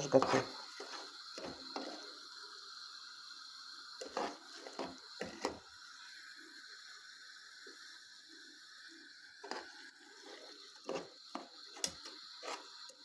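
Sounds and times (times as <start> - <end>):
fork scraping in saucepan: 4.0 - 5.6, 9.4 - 11.2, 11.8 - 12.8.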